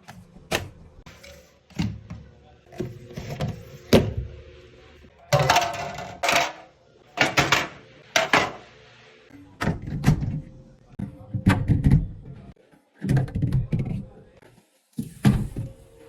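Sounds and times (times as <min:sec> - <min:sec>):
clatter of objects: 0:05.3 - 0:06.6.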